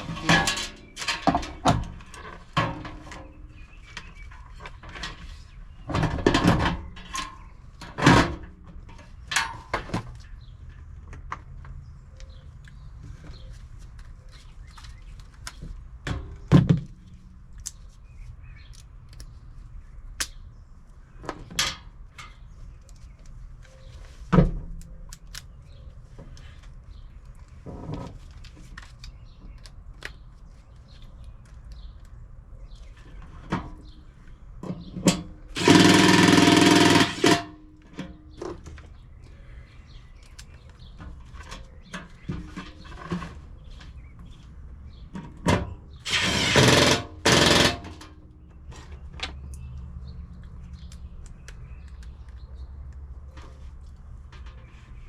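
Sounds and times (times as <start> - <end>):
tools knocking and clicking: 34.7 - 38.1.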